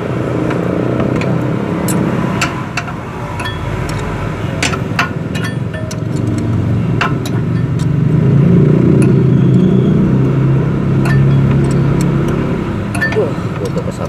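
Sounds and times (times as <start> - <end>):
vehicle engine droning: 0.0 - 14.0
hand tools clicking on metal: 0.4 - 8.0, 11.0 - 14.0.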